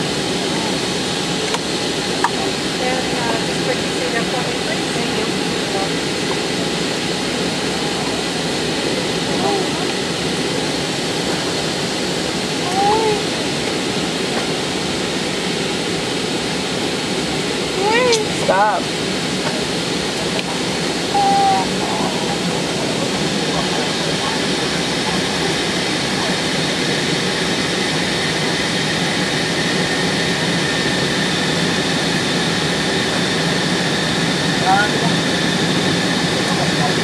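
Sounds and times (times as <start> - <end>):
airliner cabin noise: 0.0 - 37.0
brief gliding voice tone: 12.6 - 13.3.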